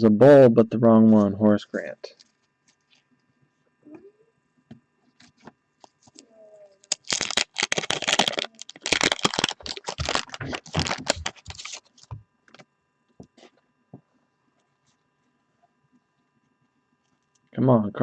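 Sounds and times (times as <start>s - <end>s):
wax paper wrapper crinkling and tearing: 6.8s - 12.1s.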